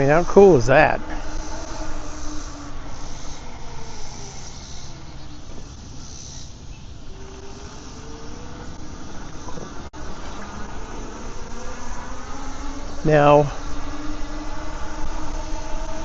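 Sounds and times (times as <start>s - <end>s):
bike rolling on pavement: 0.0s - 16.0s
insects buzzing: 0.0s - 16.0s.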